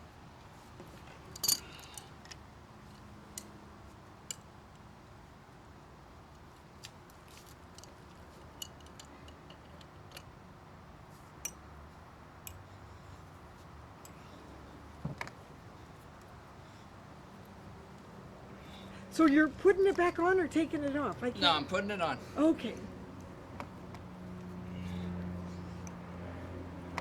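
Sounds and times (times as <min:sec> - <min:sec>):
tools and pipe parts clicking: 0:01.3 - 0:03.5, 0:07.7 - 0:10.3.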